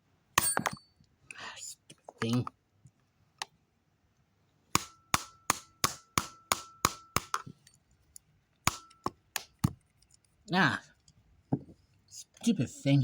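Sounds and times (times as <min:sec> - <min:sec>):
metal spanner hammering plastic: 0:04.8 - 0:07.7, 0:08.6 - 0:09.8.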